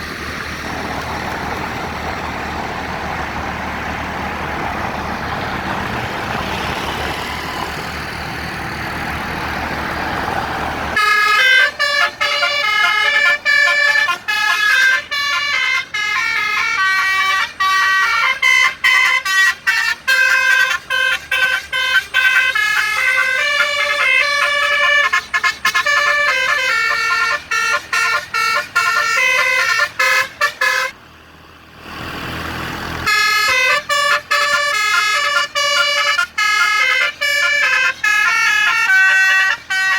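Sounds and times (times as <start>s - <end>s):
vehicle rumble: 0.0s - 39.9s
multi-tone bus horn melody: 10.9s - 31.0s, 33.0s - 39.9s.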